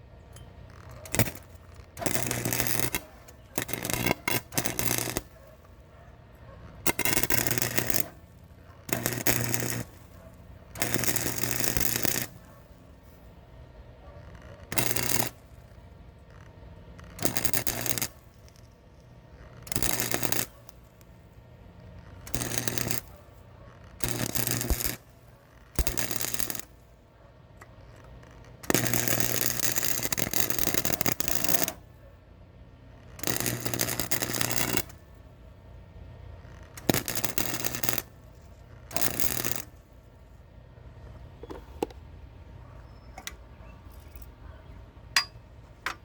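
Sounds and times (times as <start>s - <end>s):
welding arc crackling: 0.7s - 5.4s, 6.9s - 12.4s, 14.7s - 15.8s, 16.9s - 21.1s, 22.0s - 23.2s, 24.0s - 26.8s, 28.6s - 31.8s, 33.1s - 35.0s, 36.5s - 40.0s
steady low hum: 39.7s - 46.0s.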